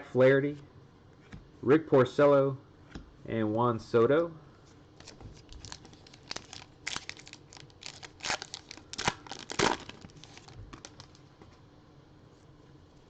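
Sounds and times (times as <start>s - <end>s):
plastic wrapper crinkling: 5.0s - 11.3s.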